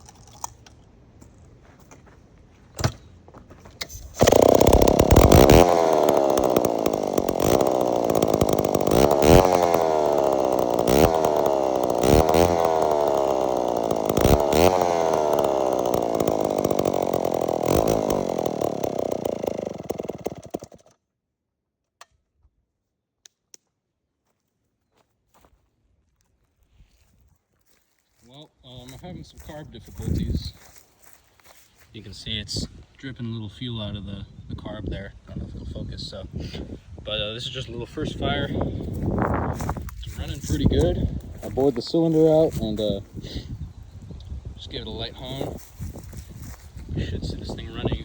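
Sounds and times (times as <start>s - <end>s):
chainsaw engine revving: 3.9s - 21.0s, 38.0s - 43.6s, 44.7s - 48.0s.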